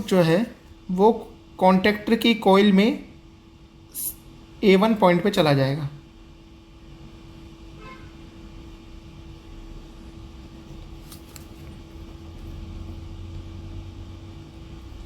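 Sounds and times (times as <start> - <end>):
low hum: 6.0 - 15.0.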